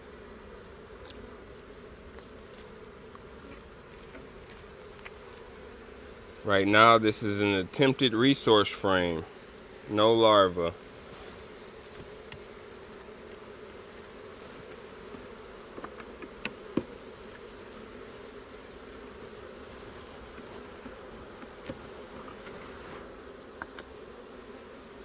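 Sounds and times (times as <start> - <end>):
honeybees buzzing: 0.0 - 25.0.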